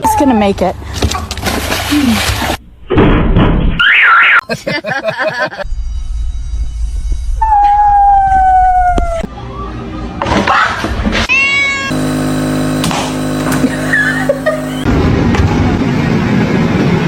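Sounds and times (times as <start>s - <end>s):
cat meowing: 11.3s - 12.0s.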